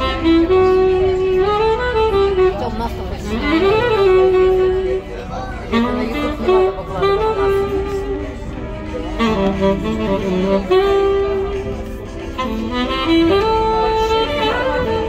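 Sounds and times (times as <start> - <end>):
instrumental music with held notes: 0.0 - 15.0.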